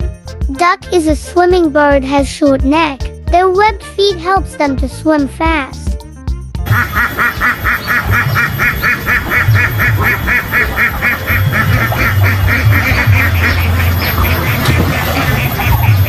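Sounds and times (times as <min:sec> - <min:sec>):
duck quacking: 0:06.6 - 0:16.0.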